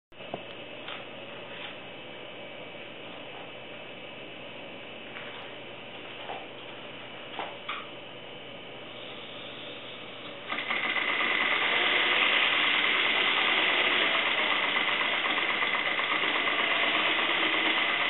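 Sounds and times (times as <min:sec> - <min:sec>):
model steam engine running: 0:10.5 - 0:18.0.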